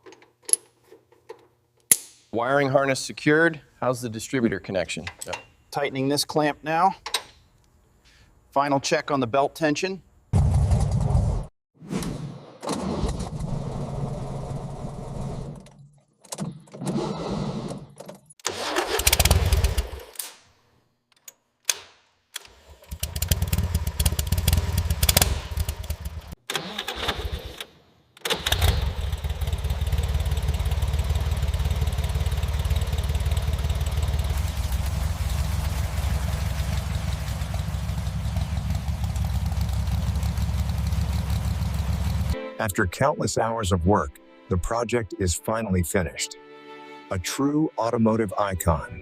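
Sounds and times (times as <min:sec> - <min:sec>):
car engine starting: 0:18.4 - 0:20.0, 0:22.8 - 0:27.6, 0:28.3 - 0:42.4.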